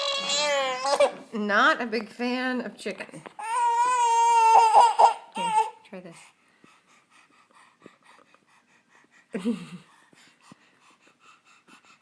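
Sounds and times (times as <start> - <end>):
baby whimpering: 0.0 - 1.2, 3.4 - 5.8.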